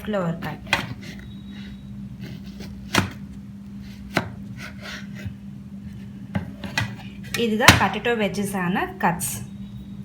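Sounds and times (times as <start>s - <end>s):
knife chopping on cutting board: 2.6s - 3.2s, 4.1s - 5.4s.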